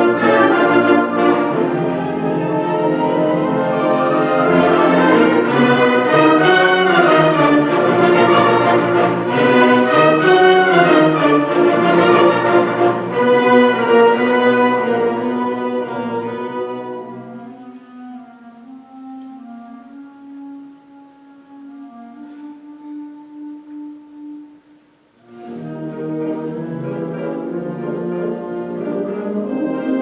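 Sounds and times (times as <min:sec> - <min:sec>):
orchestral music with strings: 0:00.0 - 0:30.0.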